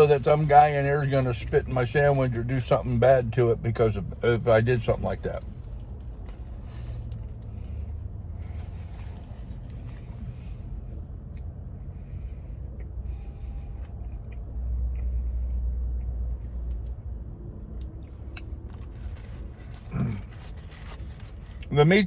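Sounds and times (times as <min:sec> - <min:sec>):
steady low rumble: 0:00.0 - 0:22.0
faint paper rustling: 0:18.7 - 0:21.7.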